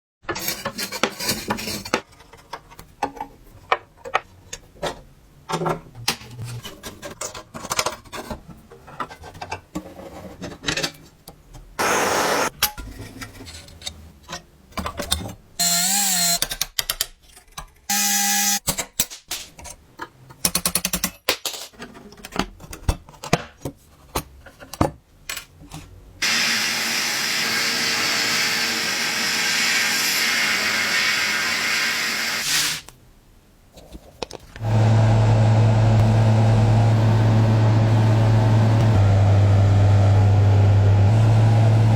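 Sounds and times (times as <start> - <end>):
small power tool bursts: 11.8 - 12.5, 17.9 - 18.6, 26.2 - 32.8
steady hiss: 11.8 - 12.5
clicks and knocks from hand work: 16.4 - 17.8.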